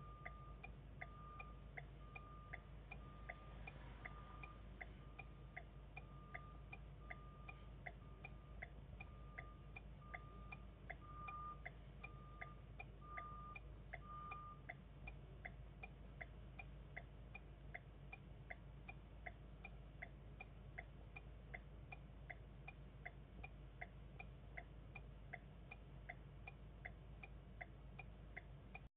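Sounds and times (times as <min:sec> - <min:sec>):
short beeps: 0:00.0 - 0:14.7
turn-signal ticking: 0:00.0 - 0:28.9.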